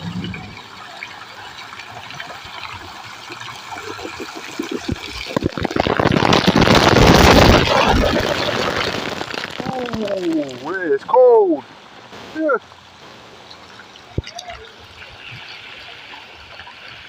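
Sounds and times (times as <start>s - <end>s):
water pouring onto a person: 0.0s - 11.0s
water splashing and dripping: 0.0s - 17.0s.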